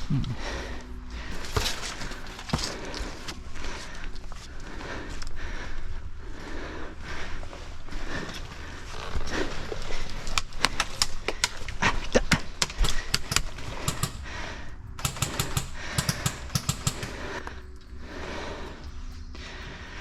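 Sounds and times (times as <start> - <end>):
airsoft gunfire rapid shots: 12.5 - 17.4.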